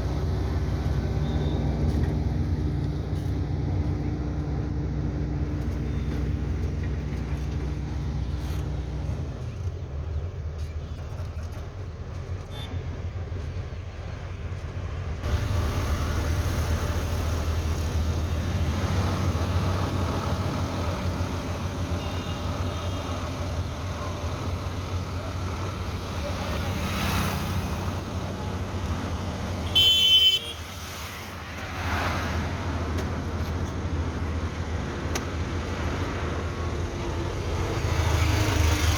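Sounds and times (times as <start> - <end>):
vehicle engine and road rumble: 0.0 - 38.9
car horn honk: 29.6 - 30.7.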